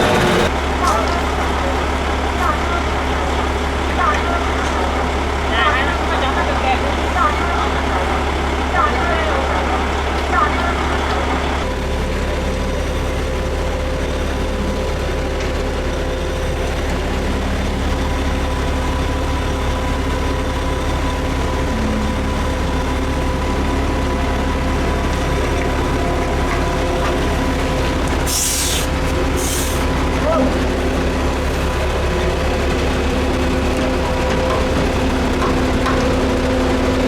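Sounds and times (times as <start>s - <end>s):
diesel truck engine rumbling: 0.0s - 37.0s
short burst of hiss: 28.3s - 29.9s.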